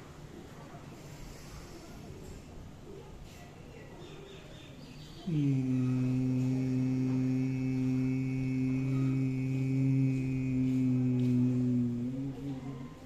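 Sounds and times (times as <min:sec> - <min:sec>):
person humming: 0:05.3 - 0:13.0.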